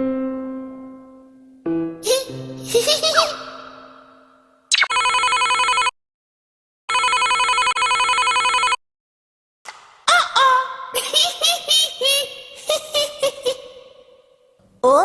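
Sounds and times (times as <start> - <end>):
electronic telephone ring: 4.7 - 6.0, 6.9 - 8.8.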